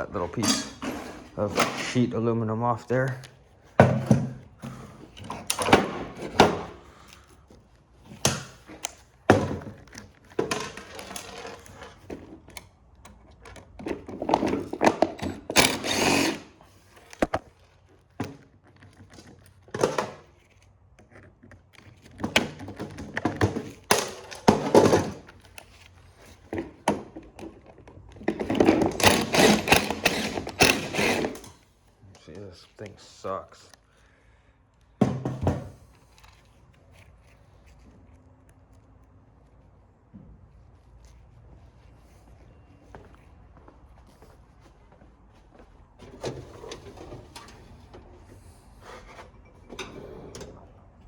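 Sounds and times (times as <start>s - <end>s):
metal rattling and scraping: 0.0s - 2.1s.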